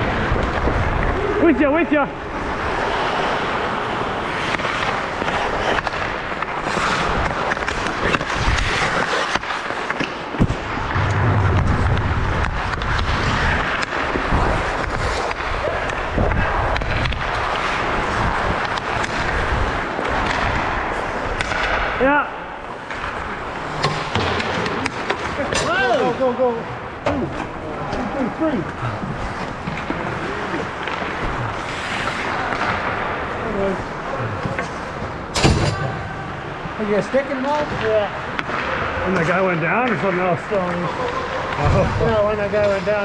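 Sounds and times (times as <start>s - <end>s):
skates scraping on ice: 2.1s - 35.3s
hockey sticks and puck clacking: 2.2s - 11.0s, 11.8s - 26.3s, 27.1s - 35.8s, 37.0s - 43.0s.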